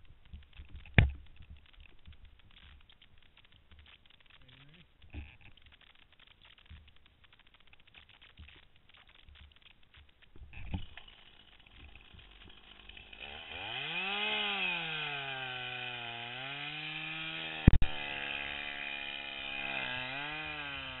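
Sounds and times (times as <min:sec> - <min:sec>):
chainsaw engine revving and idling: 0:10.8 - 0:21.0.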